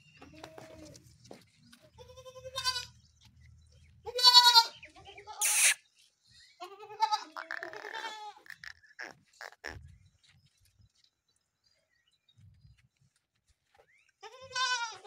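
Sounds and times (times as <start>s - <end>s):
goat kid bleating: 2.0s - 3.0s, 4.1s - 5.8s, 6.6s - 9.8s, 14.2s - 15.0s.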